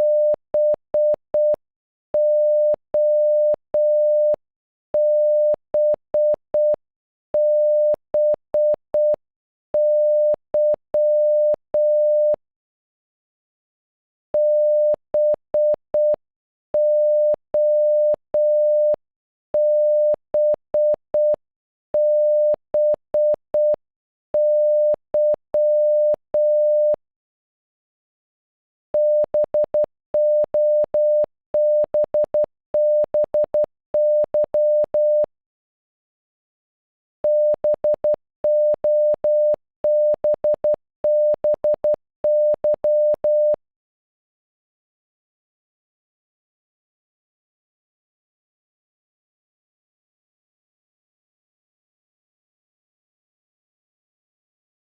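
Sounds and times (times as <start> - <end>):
morse code beeps: 0.0 - 1.6, 2.2 - 4.4, 5.0 - 6.8, 7.4 - 9.2, 9.8 - 12.4, 14.4 - 16.2, 16.8 - 19.0, 19.6 - 21.4, 22.0 - 23.8, 24.4 - 27.0, 29.0 - 35.3, 37.2 - 43.6.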